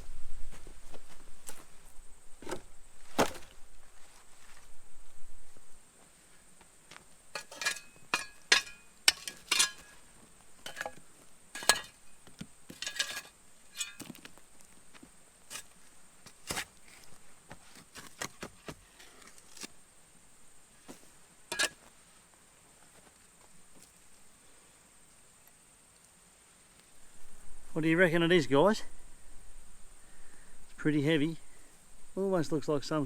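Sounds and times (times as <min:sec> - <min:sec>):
metallic objects clinking: 0:07.4 - 0:10.0, 0:10.6 - 0:11.0, 0:11.6 - 0:12.0, 0:12.7 - 0:14.1.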